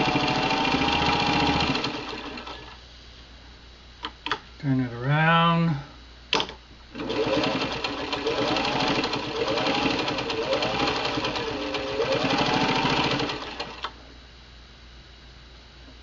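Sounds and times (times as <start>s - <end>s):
sewing machine stitching: 0.0s - 2.8s, 6.4s - 14.0s.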